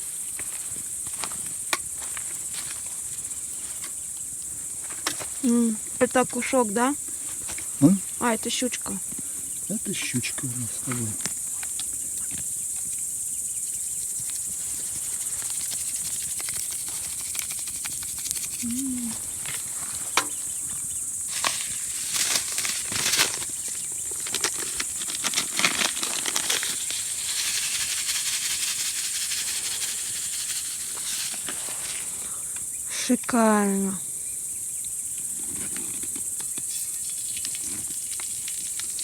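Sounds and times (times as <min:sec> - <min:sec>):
crickets chirring: 0:00.0 - 0:39.0
clicks and crackles: 0:21.3 - 0:26.8.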